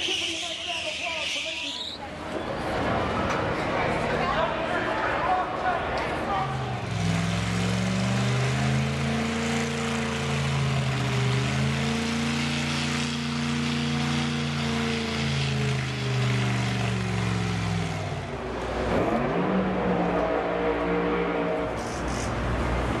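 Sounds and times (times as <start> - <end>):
drag racing car engines: 0.0 - 23.0.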